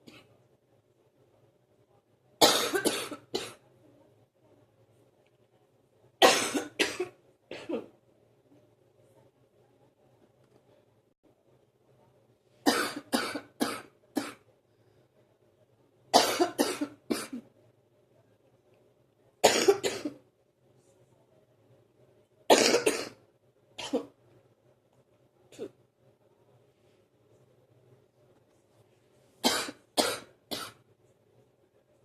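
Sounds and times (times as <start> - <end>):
person coughing: 2.4 - 3.6, 6.2 - 8.0, 12.7 - 14.4, 16.2 - 17.4, 19.4 - 20.2, 22.5 - 23.2, 29.4 - 30.8.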